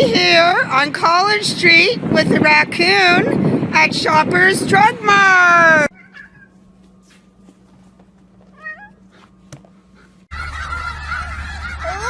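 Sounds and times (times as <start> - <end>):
cat meowing: 5.9 - 6.6, 8.5 - 9.0
poultry honking and calling: 5.9 - 6.6, 10.3 - 12.0.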